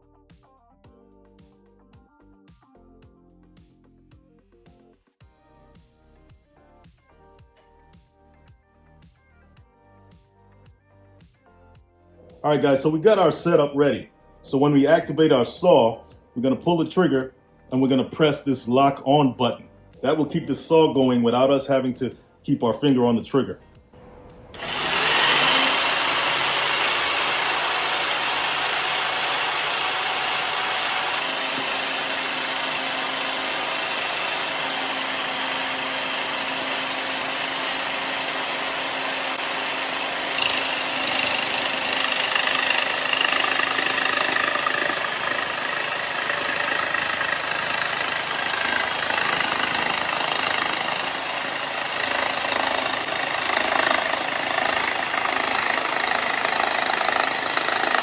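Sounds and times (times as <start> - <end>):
electric jigsaw cutting board: 24.5 - 58.0.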